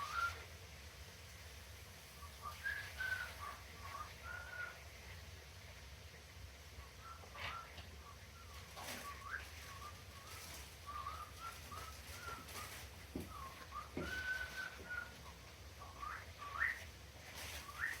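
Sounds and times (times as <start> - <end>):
cockatiel whistling: 0.0 - 0.5, 2.2 - 4.8, 6.9 - 18.0
faint knocks: 13.1 - 14.9.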